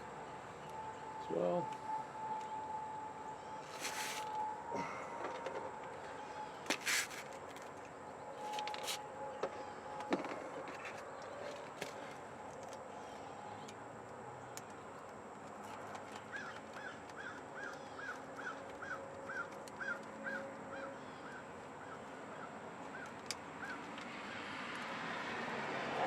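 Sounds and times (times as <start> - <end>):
low steady background noise: 0.0 - 25.7
bird calling: 16.1 - 23.9.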